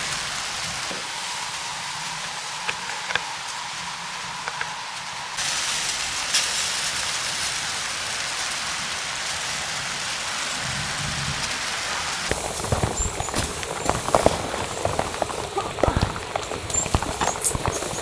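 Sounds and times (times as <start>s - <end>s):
precipitation pattering on a surface: 11.4s - 18.0s
knocks and crunches: 12.3s - 18.0s.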